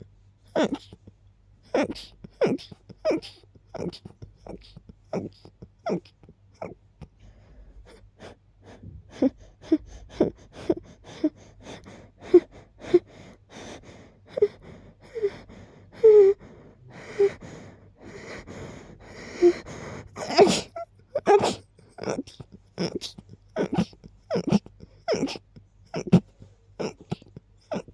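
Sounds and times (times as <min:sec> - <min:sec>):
person sneezing: 0:01.8 - 0:06.1, 0:20.2 - 0:25.4.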